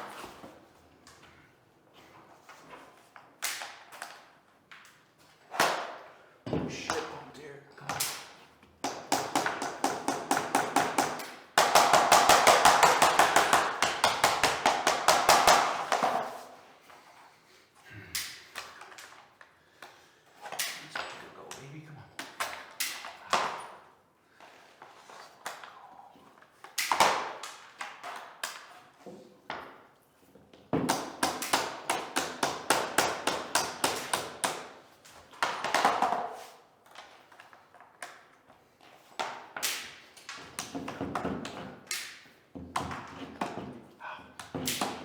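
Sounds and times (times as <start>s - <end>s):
sharp tapping on flooring planks: 7.9s - 16.6s, 30.6s - 38.3s, 38.9s - 45.0s.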